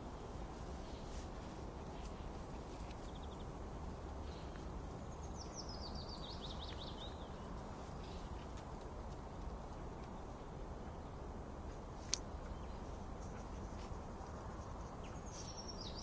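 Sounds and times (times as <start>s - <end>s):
songbird singing: 0.0s - 16.0s
bird chirp: 2.8s - 3.6s, 4.2s - 8.4s, 14.5s - 16.0s.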